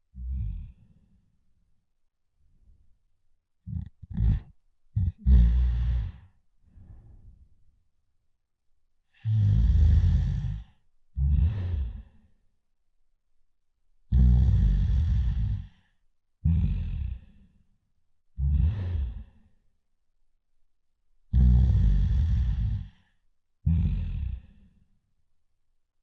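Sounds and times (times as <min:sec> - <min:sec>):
loud rattling cartoon snoring: 0:03.7 - 0:06.2, 0:09.2 - 0:12.2, 0:14.1 - 0:15.8, 0:16.5 - 0:17.3, 0:18.4 - 0:19.4, 0:21.3 - 0:23.0, 0:23.7 - 0:24.7.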